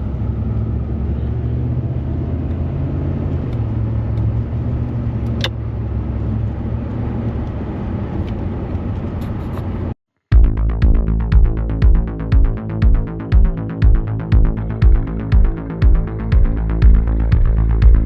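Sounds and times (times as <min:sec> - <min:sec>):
car engine and road noise: 0:00.0 - 0:18.0
electronic music with pulsing beat: 0:10.3 - 0:18.0.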